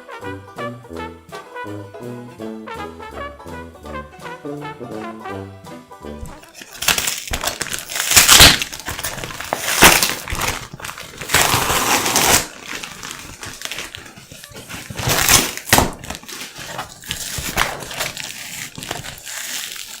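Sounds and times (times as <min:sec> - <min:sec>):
crinkling and rustling: 0:06.2 - 0:20.0.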